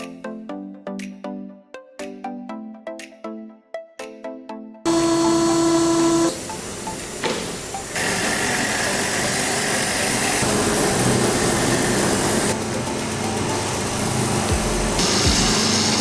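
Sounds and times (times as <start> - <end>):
machinery hissing: 4.9 - 16.0.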